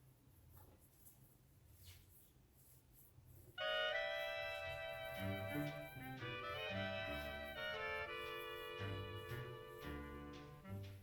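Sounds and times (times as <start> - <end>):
sustained melodic notes: 3.6 - 11.0.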